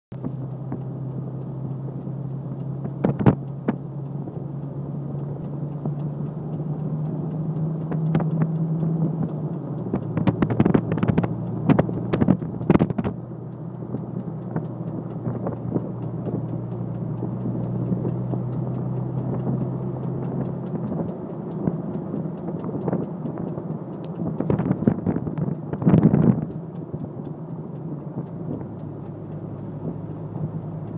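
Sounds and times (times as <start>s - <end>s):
vehicle driving drone: 0.1s - 30.9s
wind noise on microphone: 2.8s - 3.8s, 9.9s - 13.2s, 17.2s - 27.2s.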